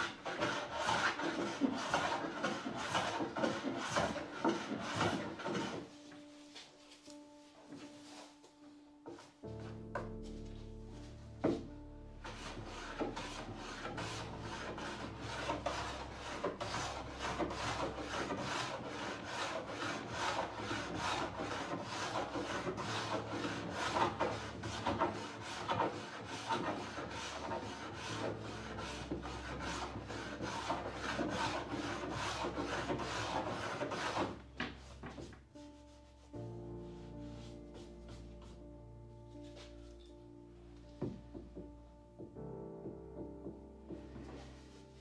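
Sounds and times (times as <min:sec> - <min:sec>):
hand rubbing a wooden door: 0:43.4 - 0:45.0.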